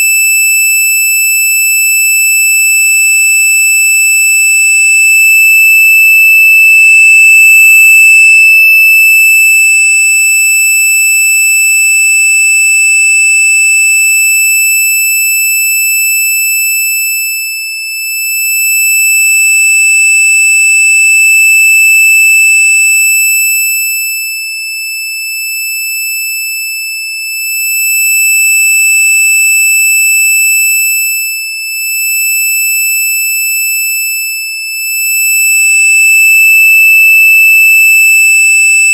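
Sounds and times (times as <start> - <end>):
high-pitched electronic tone: 6.2 - 9.8
fainter lower tones: 6.7 - 8.5.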